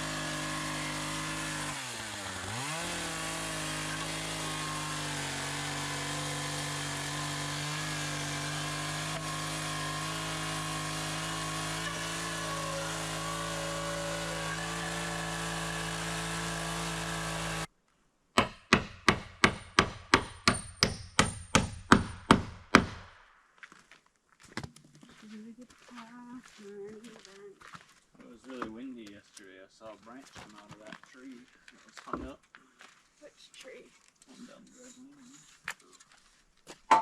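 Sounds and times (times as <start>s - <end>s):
chainsaw running: 0.0s - 17.7s
hammer striking a nail: 18.4s - 23.2s.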